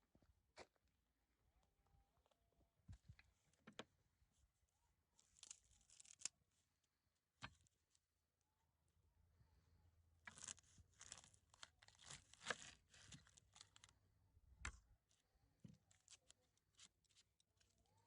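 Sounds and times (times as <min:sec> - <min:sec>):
crinkly tearing and rustling: 0:05.2 - 0:06.6, 0:10.3 - 0:14.0, 0:15.0 - 0:18.0.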